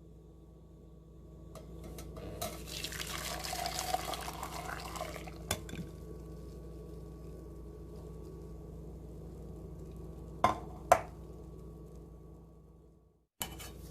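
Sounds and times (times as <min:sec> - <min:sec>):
steady low hum: 0:00.0 - 0:13.9
tea pouring into a cup: 0:02.6 - 0:06.0.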